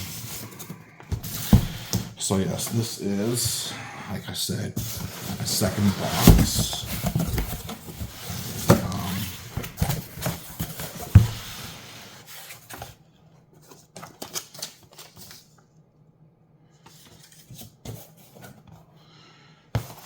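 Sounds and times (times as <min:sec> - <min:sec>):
cardboard box rustling and clicking: 0:06.2 - 0:11.3.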